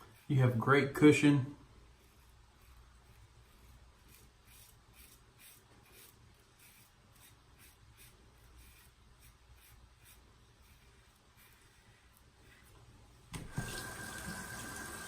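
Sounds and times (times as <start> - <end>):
razor scraping stubble: 2.0 - 12.8.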